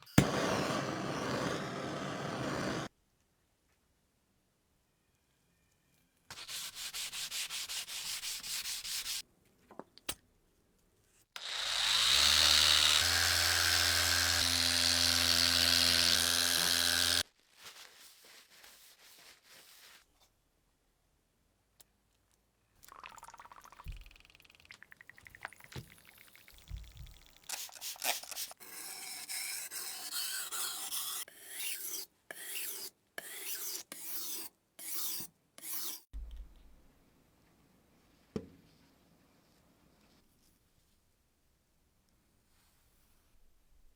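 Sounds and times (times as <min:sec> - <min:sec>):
scraping and rubbing strokes: 0:15.7 - 0:20.3, 0:27.6 - 0:36.1.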